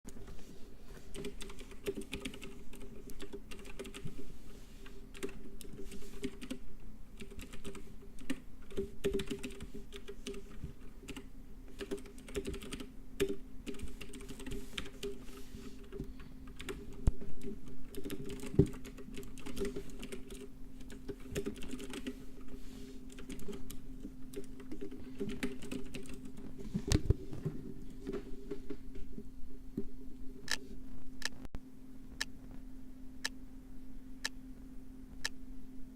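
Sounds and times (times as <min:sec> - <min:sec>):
steady low hum: 0:00.1 - 0:35.9
keyboard typing: 0:01.1 - 0:04.2, 0:05.1 - 0:06.6, 0:07.2 - 0:22.5, 0:23.1 - 0:26.5.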